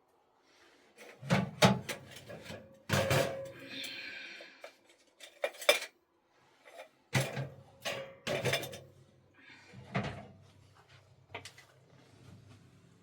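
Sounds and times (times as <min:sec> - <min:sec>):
pots and dishes clinking: 0:01.6 - 0:03.6, 0:06.7 - 0:08.9.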